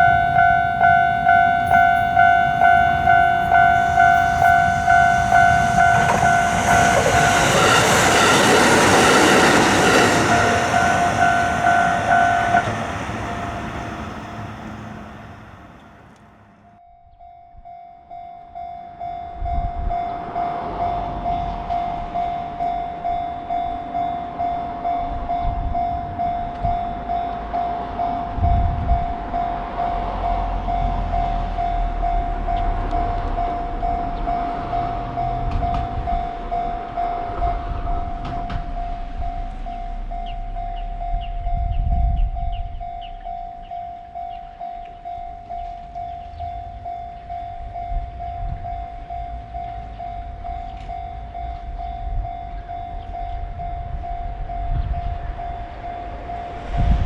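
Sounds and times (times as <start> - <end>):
passing train: 0.0 - 17.8, 18.5 - 57.0
railroad crossing bell ringing: 0.0 - 57.0
low rumbles: 19.2 - 57.0.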